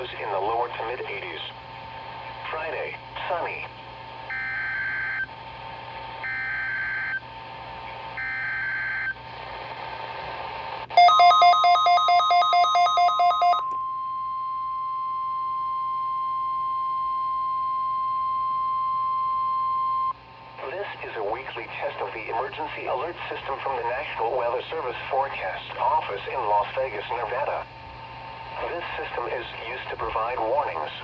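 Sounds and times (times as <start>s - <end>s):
rapid two-pitch electronic beeping: 11.0s - 13.6s
steady attention tone: 11.0s - 13.8s.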